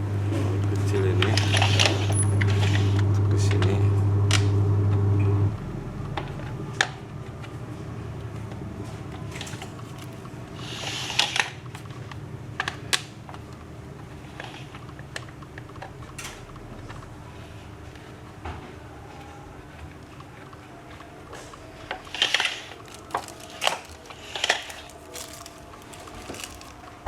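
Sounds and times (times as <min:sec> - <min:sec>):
steady low hum: 0:00.0 - 0:27.0
metal parts clicking and knocking: 0:21.9 - 0:26.9.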